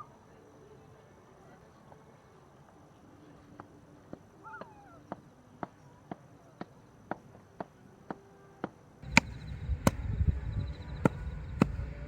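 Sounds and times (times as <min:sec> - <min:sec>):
blade chopping firewood: 0:09.0 - 0:12.0
low rumble: 0:09.0 - 0:12.0.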